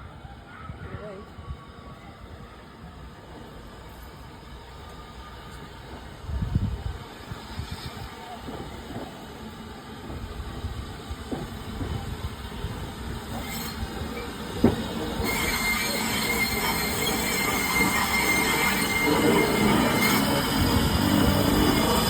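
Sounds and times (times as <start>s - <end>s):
train rolling: 0.0s - 22.0s
high-pitched wheel squeal: 13.3s - 14.4s, 15.2s - 22.0s.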